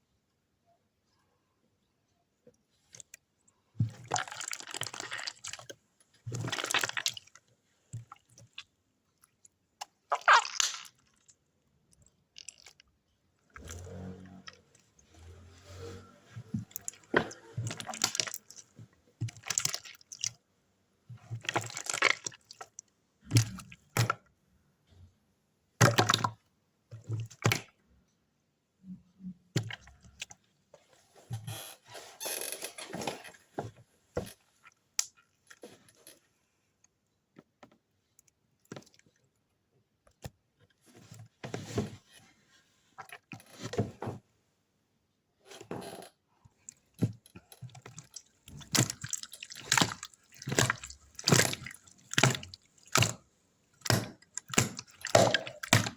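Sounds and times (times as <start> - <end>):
slime squishing and crackling: 3.9 - 11.4, 13.6 - 20.4, 21.2 - 24.2, 47.4 - 55.9.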